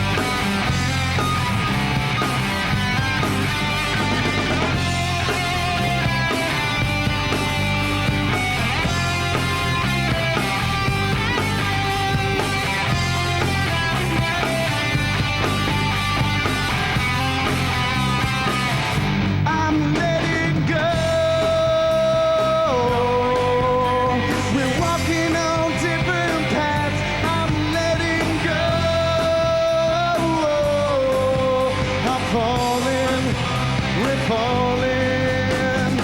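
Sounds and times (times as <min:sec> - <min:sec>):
lead guitar sliding long notes: 0:00.0 - 0:19.6
rock band playing live: 0:00.0 - 0:36.0.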